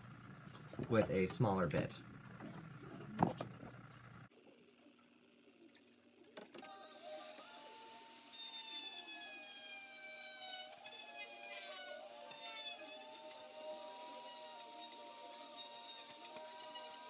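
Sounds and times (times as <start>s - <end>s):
rotary tool grinding plastic: 6.5s - 17.0s.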